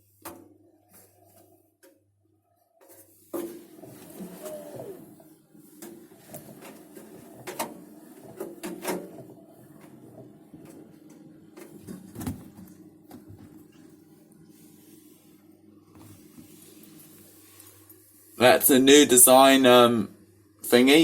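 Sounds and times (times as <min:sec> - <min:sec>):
washing machine clicks and knocks: 0:05.8 - 0:13.6.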